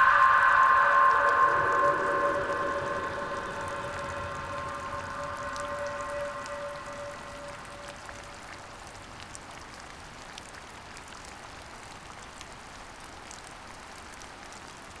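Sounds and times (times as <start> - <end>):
steady rainfall: 0.0 - 8.6.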